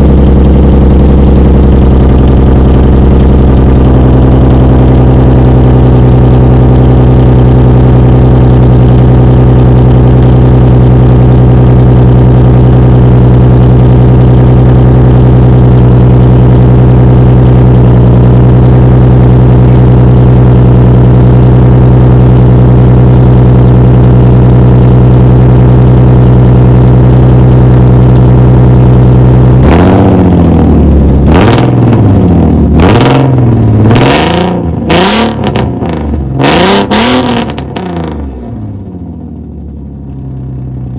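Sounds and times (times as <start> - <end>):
car engine revving: 0.0 - 38.8.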